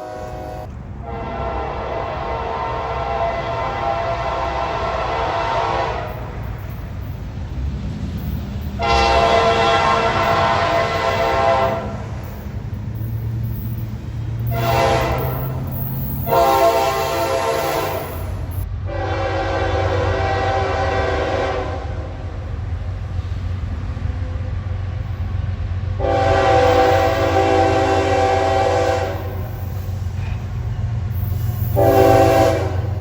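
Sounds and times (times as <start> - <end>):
locomotive air horn blasts: 0.0 - 6.7, 8.8 - 12.4, 14.4 - 22.2, 26.0 - 29.6, 31.6 - 33.0
low rumble of passing train: 0.0 - 33.0.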